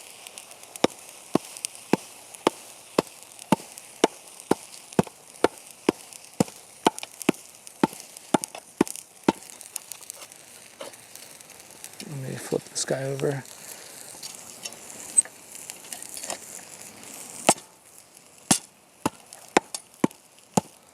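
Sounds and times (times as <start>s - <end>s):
hammers striking hot steel: 0.8s - 9.6s, 17.5s - 17.7s, 18.5s - 20.7s.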